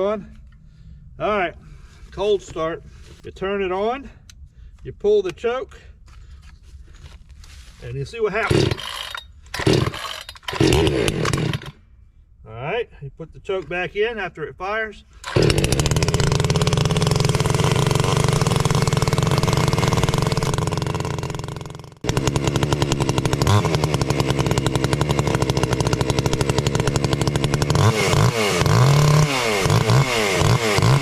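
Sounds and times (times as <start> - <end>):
chainsaw engine revving: 8.4 - 11.8, 15.2 - 31.0.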